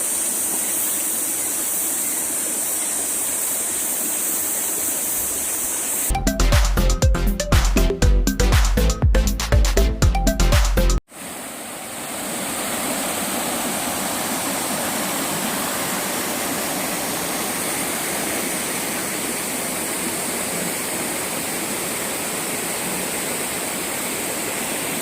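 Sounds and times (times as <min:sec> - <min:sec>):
mountain stream rushing: 0:11.1 - 0:25.0.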